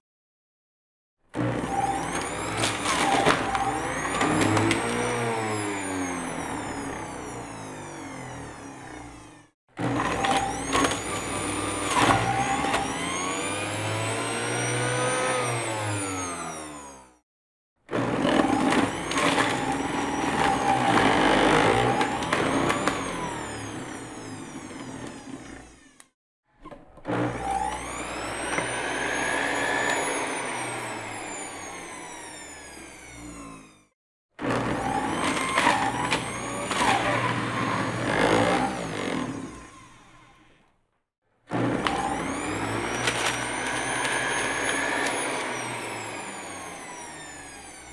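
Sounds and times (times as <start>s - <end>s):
blender motor whine: 1.3s - 17.2s, 17.9s - 47.9s.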